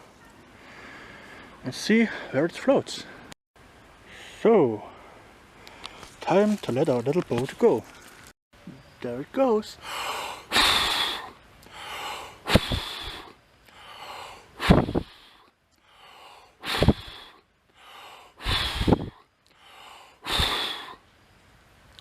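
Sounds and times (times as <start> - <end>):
person breathing heavily: 0.6 - 2.4, 9.8 - 21.1
air thumping microphone: 12.5 - 13.0, 14.6 - 15.1, 18.5 - 19.2.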